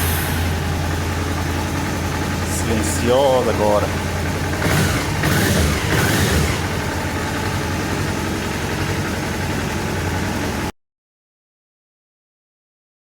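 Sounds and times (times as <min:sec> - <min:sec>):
motorcycle engine idling: 0:00.0 - 0:10.7.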